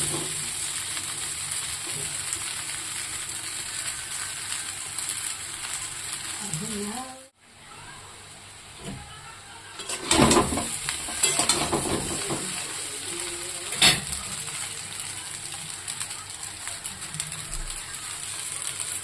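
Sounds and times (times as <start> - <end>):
food sizzling in a pan: 0.0 - 19.0
utensil scraping a pan: 9.8 - 12.8.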